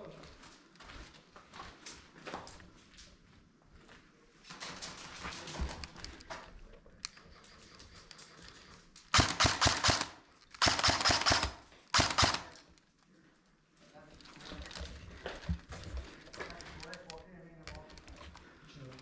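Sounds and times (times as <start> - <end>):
airsoft rifle automatic bursts: 9.1 - 12.6.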